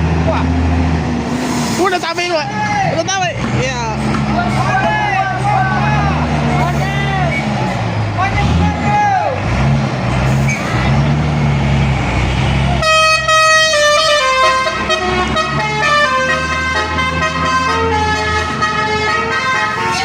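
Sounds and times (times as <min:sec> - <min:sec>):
truck diesel engine running: 0:00.0 - 0:20.0
multi-tone horn playing a tune: 0:12.8 - 0:20.0.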